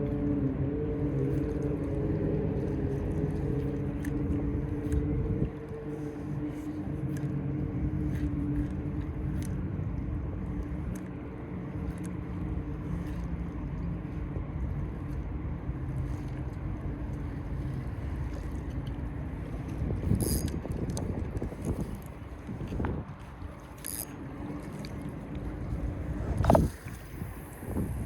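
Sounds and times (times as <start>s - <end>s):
engine rumbling: 0.0s - 28.0s.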